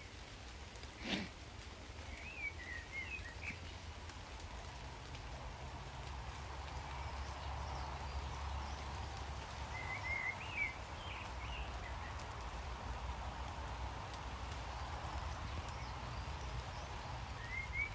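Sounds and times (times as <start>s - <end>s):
rain falling on leaves: 0.0s - 17.9s
bird song whistled notes: 2.1s - 3.6s, 9.7s - 11.8s, 15.6s - 17.9s.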